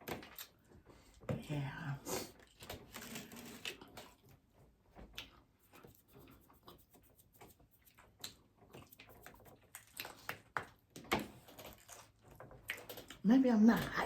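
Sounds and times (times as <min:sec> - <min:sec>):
crunching of hard-shell tacos: 0:02.4 - 0:13.2.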